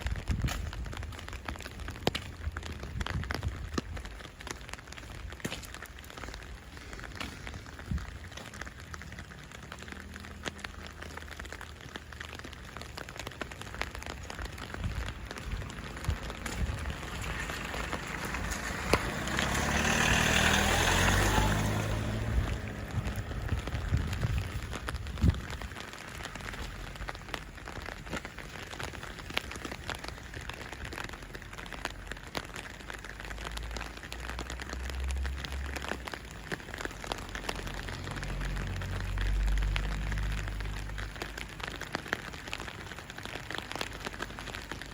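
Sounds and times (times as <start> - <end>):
rain falling: 0.0 - 44.9
raindrop ticks: 0.0 - 44.9.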